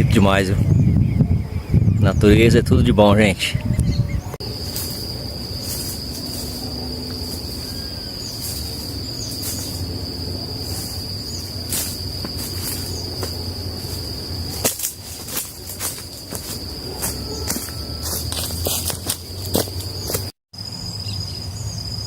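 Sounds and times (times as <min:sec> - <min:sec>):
insect trilling: 0:04.4 - 0:22.0.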